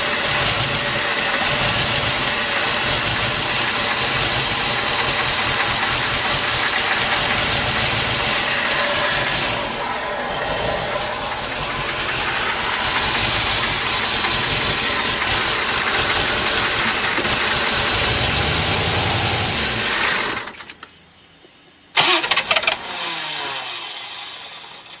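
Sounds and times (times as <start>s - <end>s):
car engine running with a miss: 0.0s - 25.0s
short falling whine: 6.7s - 15.6s.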